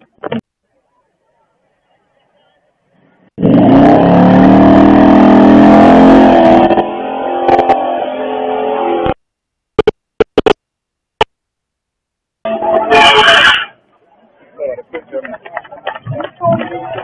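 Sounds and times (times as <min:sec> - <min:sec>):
car engine revving: 0:03.4 - 0:09.2.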